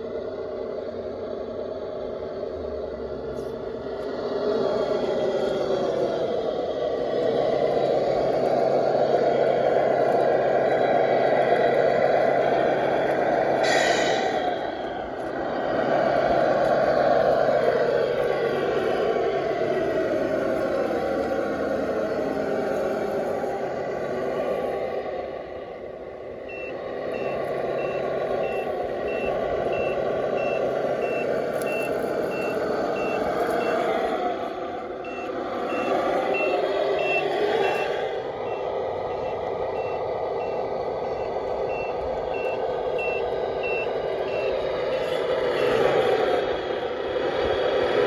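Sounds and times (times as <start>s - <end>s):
whir of motor and gears: 0.0s - 48.0s
reversing beeper beeping: 9.8s - 25.1s, 26.4s - 46.4s.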